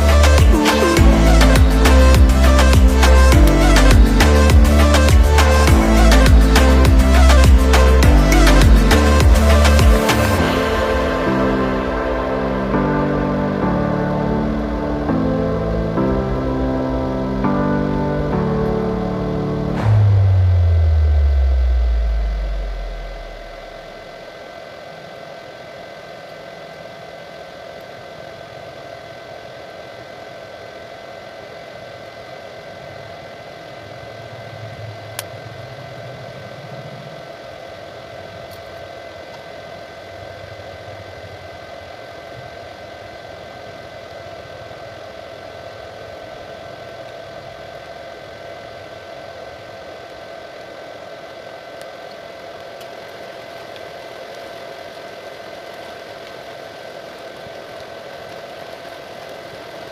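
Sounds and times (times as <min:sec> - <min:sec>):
low rumble: 0:00.0 - 0:13.7, 0:15.3 - 0:24.3
mechanical hum with whining tones: 0:00.0 - 0:59.9.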